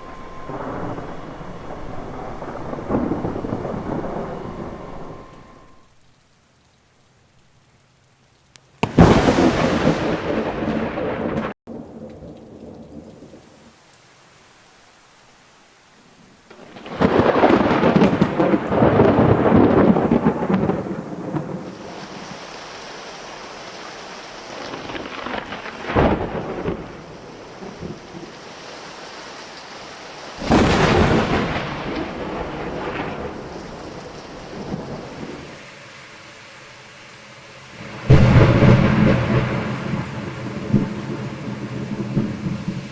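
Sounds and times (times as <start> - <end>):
sharp thunder crack: 0.0 - 5.8, 8.8 - 11.9, 30.4 - 35.6, 37.8 - 42.9
thunder peals: 0.0 - 5.9, 8.8 - 12.0, 16.6 - 22.0, 30.4 - 35.8, 37.2 - 42.9
steady rain: 0.0 - 42.9.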